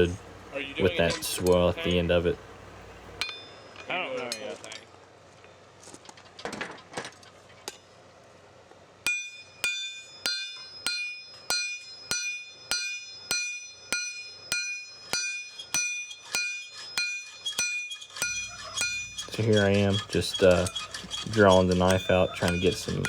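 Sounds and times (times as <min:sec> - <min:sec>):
hammer ringing on anvil: 0:03.2 - 0:04.4, 0:09.1 - 0:23.0.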